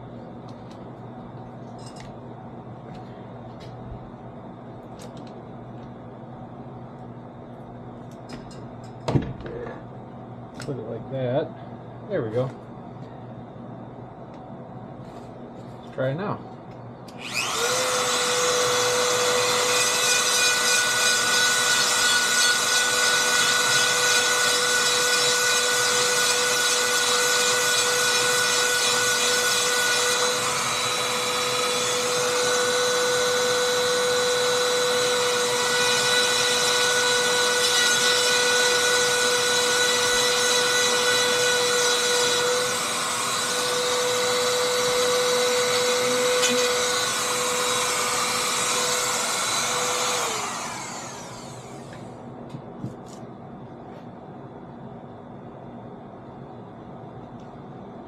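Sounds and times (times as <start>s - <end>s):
rotary tool grinding with whine: 17.1s - 52.1s.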